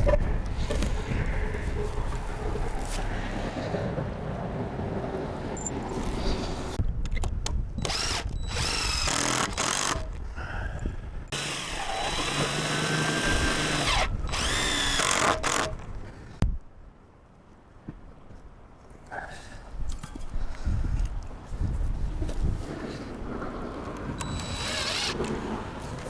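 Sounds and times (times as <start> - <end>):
wind rumble on microphone: 0.0 - 9.1, 10.0 - 11.3, 19.6 - 26.0
power drill motor whine: 7.8 - 10.0, 11.4 - 15.7, 24.2 - 25.2.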